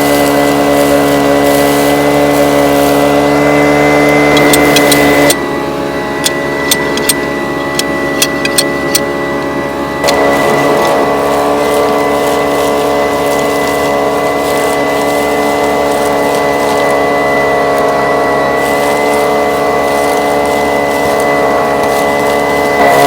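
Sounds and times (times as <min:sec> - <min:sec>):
engine-driven vacuum running: 0:00.0 - 0:23.0.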